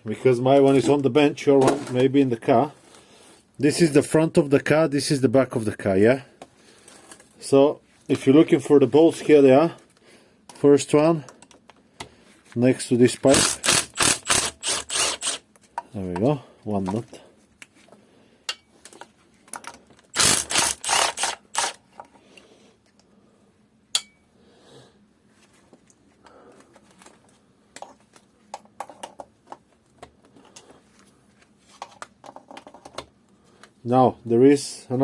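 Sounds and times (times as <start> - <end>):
ratchet clicking: 13.4 - 15.4, 20.1 - 21.8.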